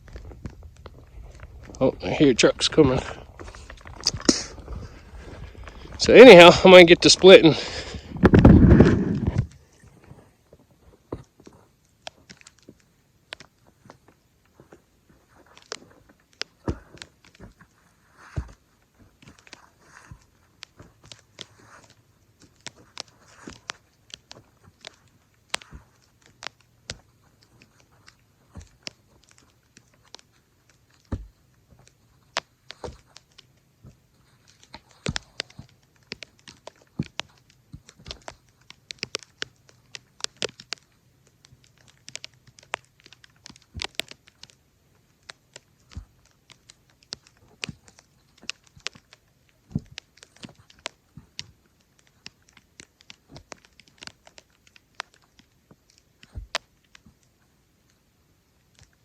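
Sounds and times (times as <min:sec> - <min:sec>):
wood crunching and tearing: 0:00.0 - 0:59.0
axe splitting firewood: 0:05.5 - 0:09.5, 0:15.6 - 0:27.1.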